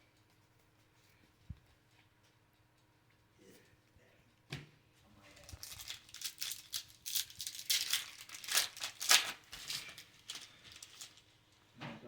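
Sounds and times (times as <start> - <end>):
foil wrapper crinkling: 5.2 - 11.4.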